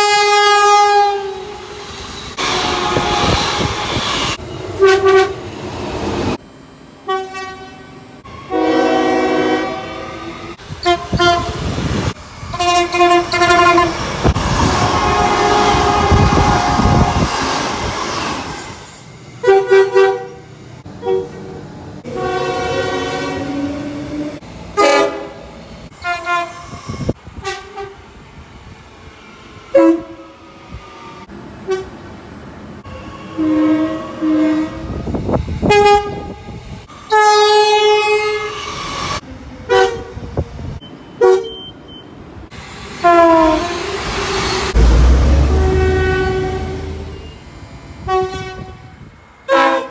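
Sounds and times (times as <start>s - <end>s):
train horn blasts: 0.0s - 1.6s, 2.4s - 5.4s, 7.0s - 11.8s, 12.5s - 17.5s, 19.4s - 25.4s, 26.0s - 28.0s, 29.7s - 30.3s, 31.6s - 32.0s, 32.9s - 38.5s, 43.0s - 44.0s, 44.7s - 49.9s
rail noise of moving train: 0.0s - 49.9s.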